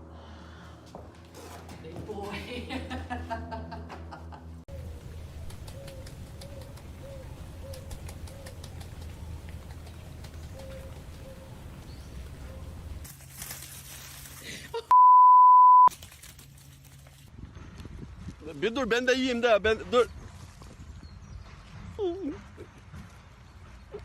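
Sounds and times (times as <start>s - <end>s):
bird cooing: 4.7s - 13.0s
light clicks: 7.7s - 11.9s
loud beep tone: 14.9s - 15.9s.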